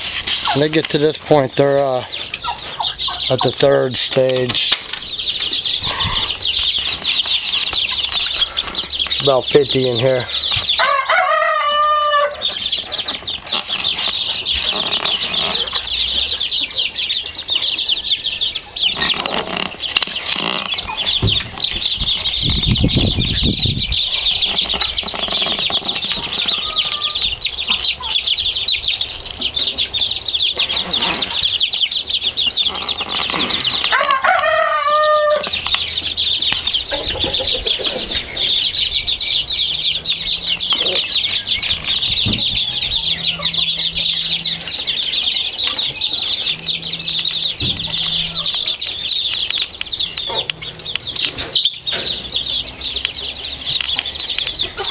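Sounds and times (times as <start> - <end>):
chicks peeping: 0.0 - 54.9
louder chick call: 10.8 - 12.6, 26.2 - 27.3, 33.7 - 35.6.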